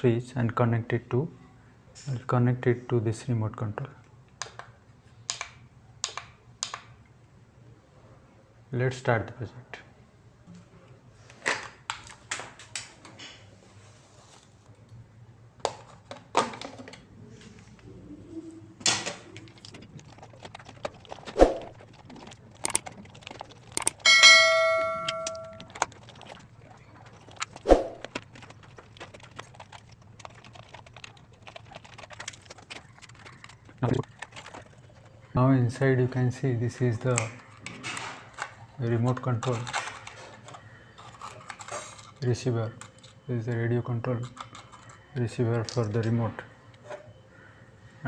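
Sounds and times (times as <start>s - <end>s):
tools and plastic parts clicking: 18.8s - 24.2s, 25.0s - 35.3s, 36.8s - 47.2s
ringing ding: 24.0s - 25.7s.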